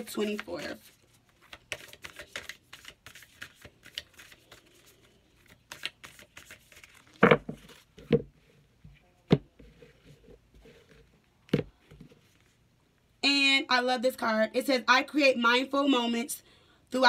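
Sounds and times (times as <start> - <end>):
cards being shuffled: 0.0 - 8.3
cards knocking on surface: 7.1 - 8.3.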